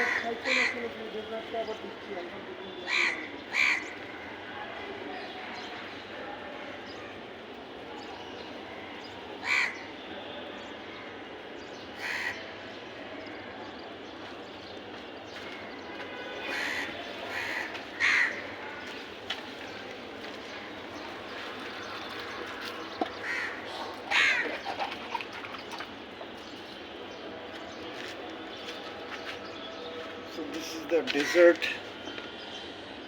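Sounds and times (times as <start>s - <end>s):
crows cawing: 0.0s - 0.9s, 2.9s - 4.2s, 9.4s - 9.8s, 12.0s - 12.4s, 16.4s - 19.0s, 23.0s - 25.0s.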